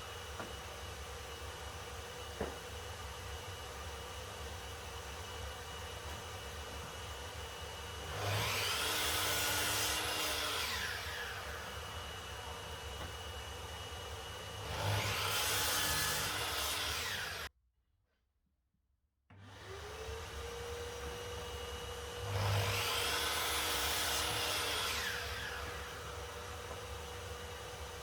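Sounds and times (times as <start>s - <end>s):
power tool cutting timber: 6.0s - 17.5s, 19.3s - 28.0s.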